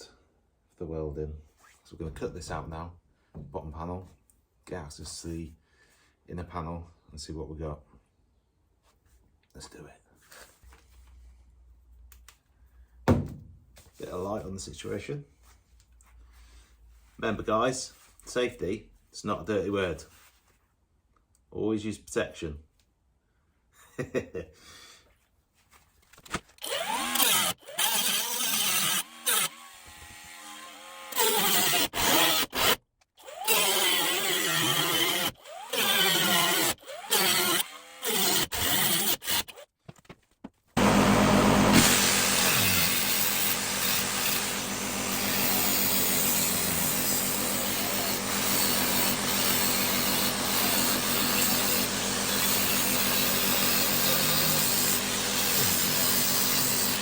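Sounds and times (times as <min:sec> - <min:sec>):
power tool cutting sheet steel: 0:26.6 - 0:39.6, 0:40.8 - 0:57.0.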